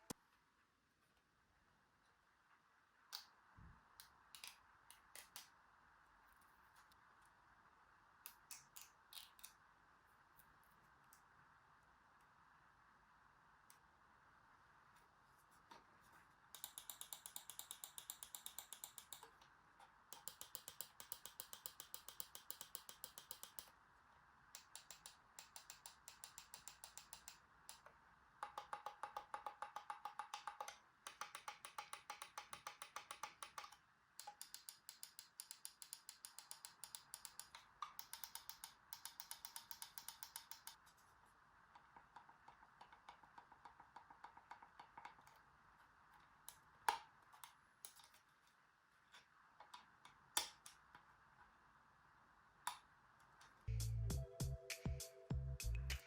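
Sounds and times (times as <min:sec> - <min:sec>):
mouse buttons clicking rapidly: 0:16.6 - 0:19.4, 0:20.1 - 0:23.7, 0:24.6 - 0:27.8, 0:28.4 - 0:40.8.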